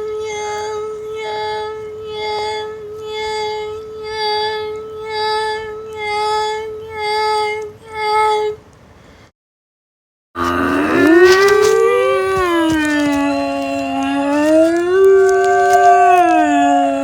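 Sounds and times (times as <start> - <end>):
pulsing buzzy alarm tone: 10.4 - 17.0
steady low alarm tone: 10.4 - 17.0.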